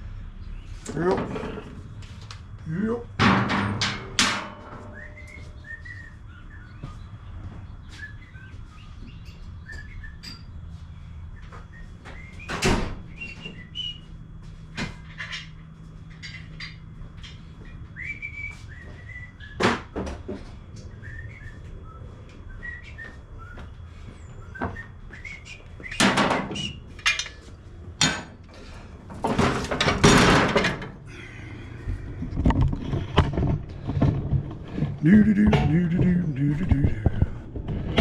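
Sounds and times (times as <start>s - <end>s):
hand tools clanking on metal: 3.2s - 5.4s, 25.9s - 30.9s, 35.0s - 37.3s.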